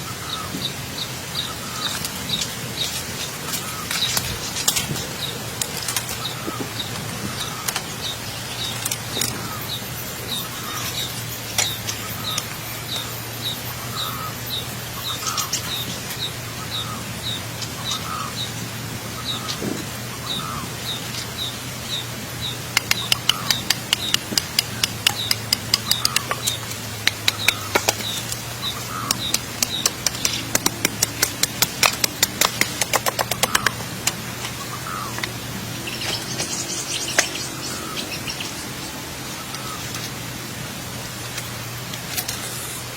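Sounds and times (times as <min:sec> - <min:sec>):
small bird chirping: 0:06.0 - 0:40.1
sharp clicks or taps: 0:22.8 - 0:28.4, 0:29.1 - 0:34.2.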